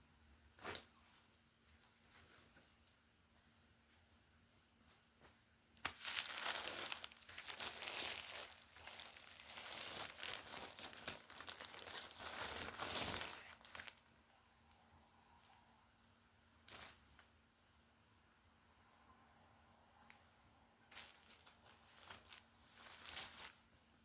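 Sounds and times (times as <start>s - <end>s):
plastic packaging crinkling: 5.8s - 14.0s, 16.6s - 17.2s, 20.9s - 23.6s.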